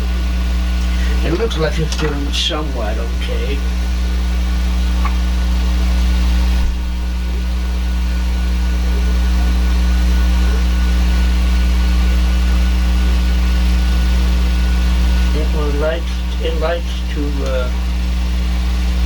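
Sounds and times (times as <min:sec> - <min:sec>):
three-d printer humming: 0:00.0 - 0:19.0.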